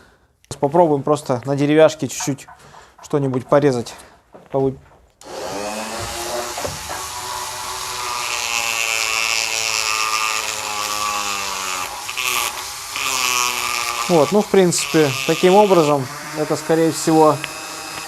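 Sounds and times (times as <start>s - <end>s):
rotary tool cutting wood: 5.2s - 18.0s.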